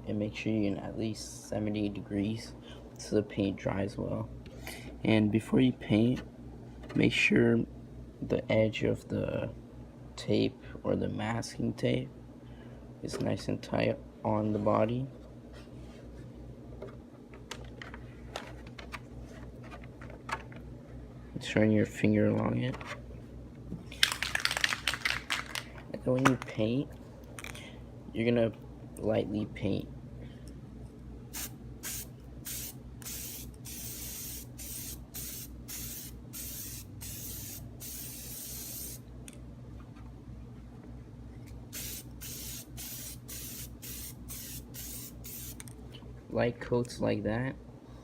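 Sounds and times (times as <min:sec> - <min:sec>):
low background hum: 0:00.0 - 0:48.0
spray paint can hissing: 0:31.4 - 0:39.0, 0:41.7 - 0:45.6.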